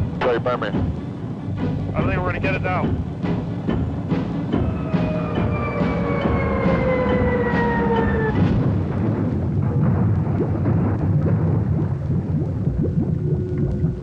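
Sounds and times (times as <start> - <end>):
rumbling and knocking: 0.0 - 14.0
helicopter whine falling in pitch: 4.1 - 9.2.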